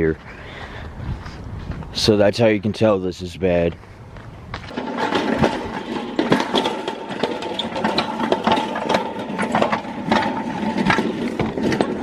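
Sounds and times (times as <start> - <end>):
irregular clicks and knocks: 4.6 - 12.0.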